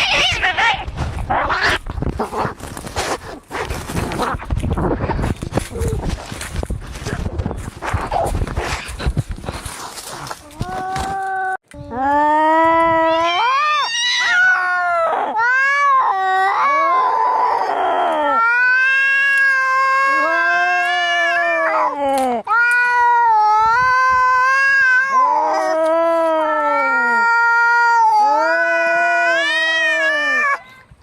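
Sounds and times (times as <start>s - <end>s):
cat rasping cry: 0.0s - 1.8s, 13.1s - 17.6s, 18.3s - 30.6s
cats yowling in a fight: 0.0s - 1.8s, 13.0s - 30.7s.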